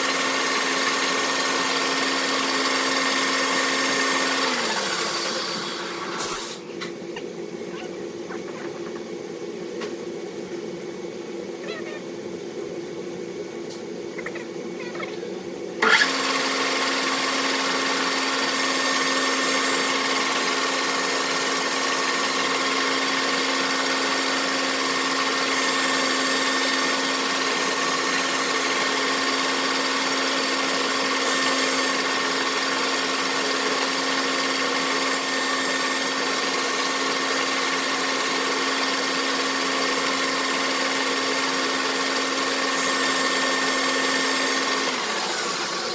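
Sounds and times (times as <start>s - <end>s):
machine tool motor hum: 0.0s - 10.6s, 12.1s - 45.9s.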